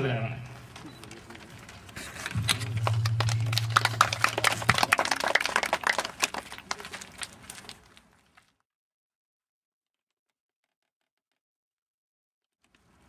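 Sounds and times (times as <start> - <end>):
audience clapping: 2.3 - 7.9.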